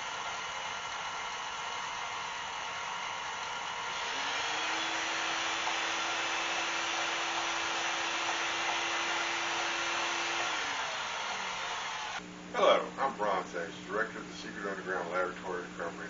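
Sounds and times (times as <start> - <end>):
belt sander humming: 0.0 - 12.2.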